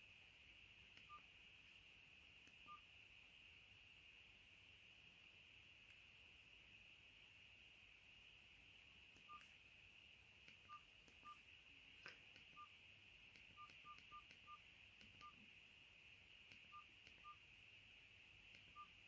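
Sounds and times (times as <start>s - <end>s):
phone keypad beeps: 9.2s - 9.5s, 12.4s - 12.7s, 13.5s - 15.4s, 16.6s - 17.4s, 18.6s - 19.0s.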